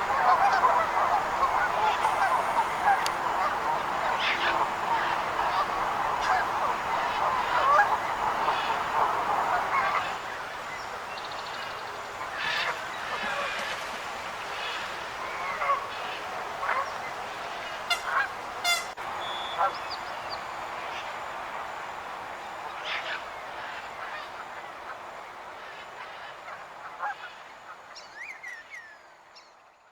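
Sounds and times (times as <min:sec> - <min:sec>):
geese honking: 0:00.0 - 0:20.2.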